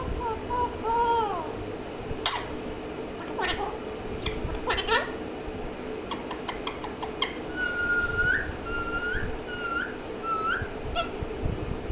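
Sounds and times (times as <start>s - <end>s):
parrot whistling: 6.1s - 11.1s.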